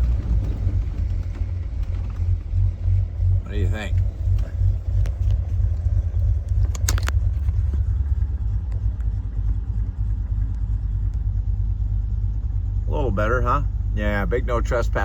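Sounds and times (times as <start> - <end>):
car engine and road rumble: 0.0 - 15.0
short clatter: 6.4 - 8.0.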